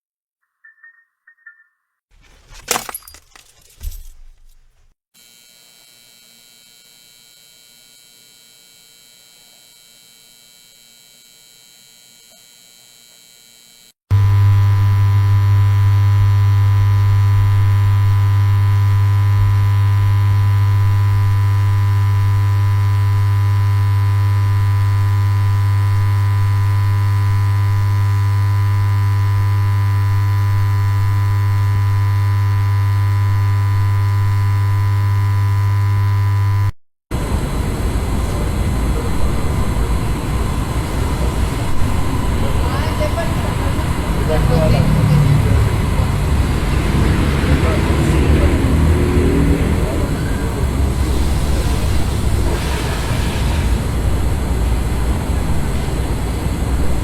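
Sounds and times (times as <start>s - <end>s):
neon light buzzing: 5.2s - 57.0s
loud low hum with overtones: 14.1s - 57.0s.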